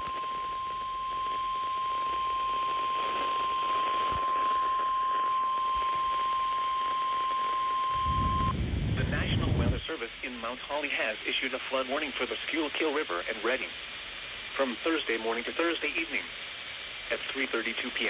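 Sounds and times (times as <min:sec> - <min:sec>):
radio receiver hiss: 0:00.0 - 0:18.0
steady alarm beep: 0:00.2 - 0:08.5.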